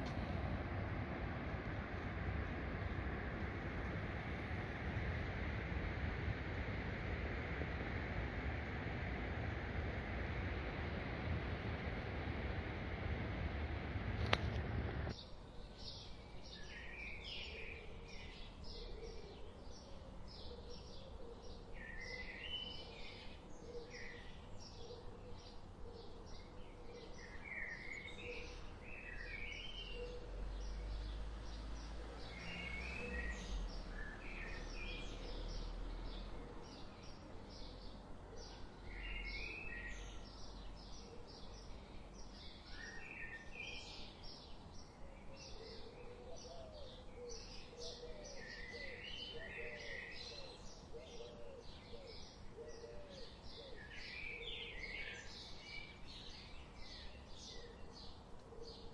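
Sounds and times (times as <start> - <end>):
rush of noise: 0.0 - 15.1
faint low rumble: 0.0 - 15.2
songbirds chirping: 0.0 - 58.9.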